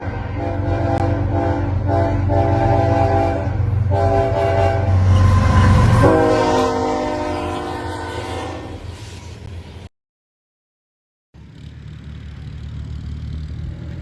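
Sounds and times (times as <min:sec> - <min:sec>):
locomotive horn blasts: 0:00.0 - 0:09.2
passing train rumble: 0:00.0 - 0:09.9, 0:11.4 - 0:14.0.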